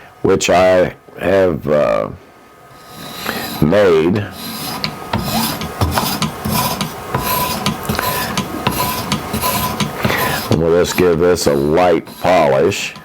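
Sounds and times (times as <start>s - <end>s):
sharpening stone rasping on blade: 2.8s - 3.8s, 4.4s - 13.0s.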